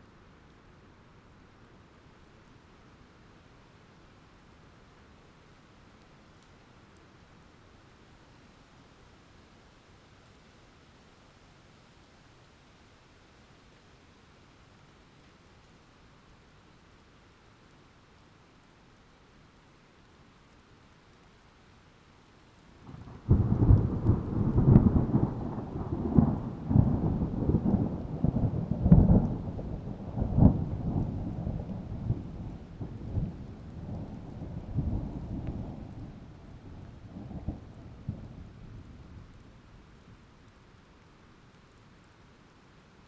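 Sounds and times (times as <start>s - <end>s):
thunder crack and rolling rumble: 22.8s - 39.9s.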